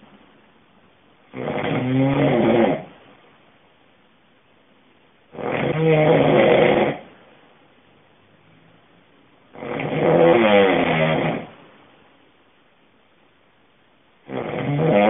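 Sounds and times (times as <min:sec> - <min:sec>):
person snoring: 0:01.3 - 0:02.9, 0:05.4 - 0:07.1, 0:09.6 - 0:11.5, 0:14.3 - 0:15.0.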